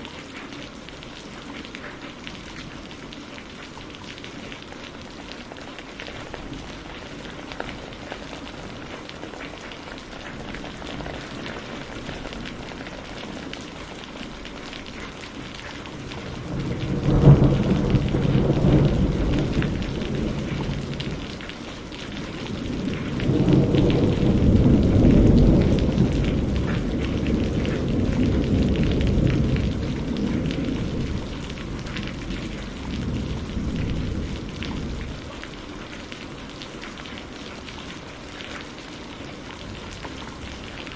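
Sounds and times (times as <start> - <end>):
steady rain falling: 0.0 - 40.9
thunder crack and rumble: 6.1 - 37.7.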